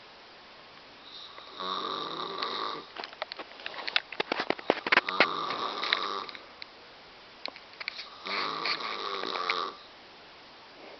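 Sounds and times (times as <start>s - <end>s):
woman snoring loudly: 1.1s - 2.9s, 5.0s - 6.4s, 8.1s - 9.8s.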